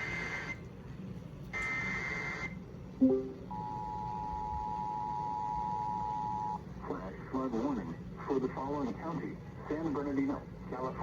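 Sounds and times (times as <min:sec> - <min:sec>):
two-tone attention signal: 0:03.0 - 0:06.6.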